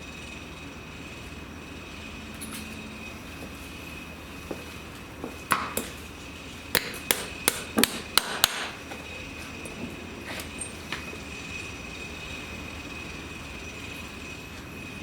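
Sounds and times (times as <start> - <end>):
hammer striking metal: 6.8 - 8.8.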